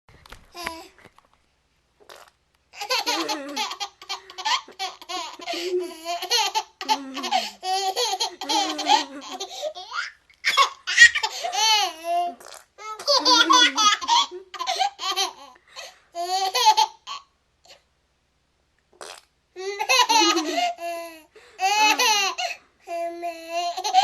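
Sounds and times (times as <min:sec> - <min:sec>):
baby giggling: 0:02.8 - 0:15.6, 0:19.6 - 0:24.0.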